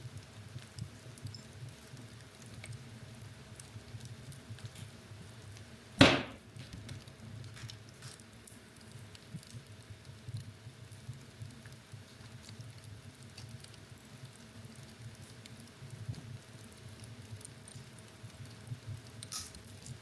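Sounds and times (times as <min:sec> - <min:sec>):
wood fire rumbling and crackling: 0:00.0 - 0:20.0
loud sharp fire pop: 0:06.0 - 0:06.4.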